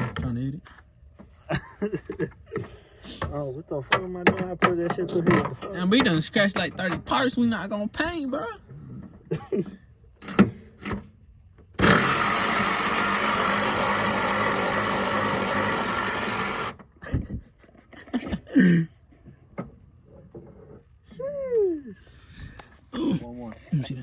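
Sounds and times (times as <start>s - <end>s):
power tool running: 11.8s - 16.8s.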